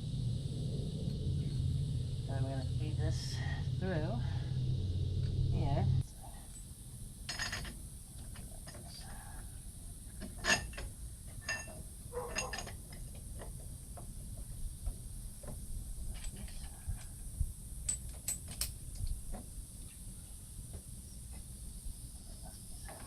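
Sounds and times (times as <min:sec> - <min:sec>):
metal parts clinking: 0:07.3 - 0:07.8, 0:10.3 - 0:13.1.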